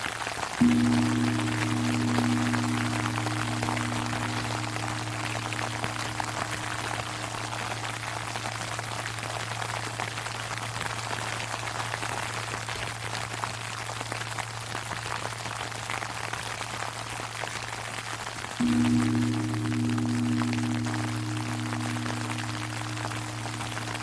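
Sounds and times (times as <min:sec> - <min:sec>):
temple bell struck: 0:00.6 - 0:11.6, 0:18.6 - 0:24.0
temple bell humming: 0:00.6 - 0:12.4, 0:18.6 - 0:24.0.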